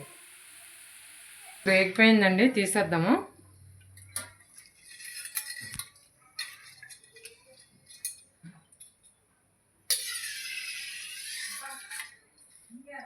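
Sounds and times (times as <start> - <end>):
metal utensils clinking on pan: 4.0 - 9.0, 9.9 - 12.2.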